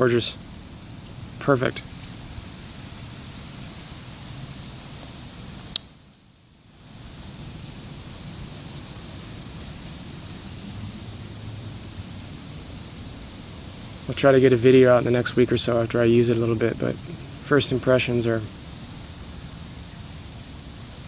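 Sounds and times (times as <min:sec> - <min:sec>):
steady background hiss: 0:00.0 - 0:21.0
sharp click: 0:05.7 - 0:06.0.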